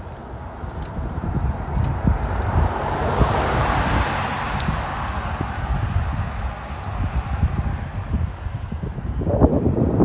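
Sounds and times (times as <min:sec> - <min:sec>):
wind buffeting microphone: 0:00.0 - 0:10.0.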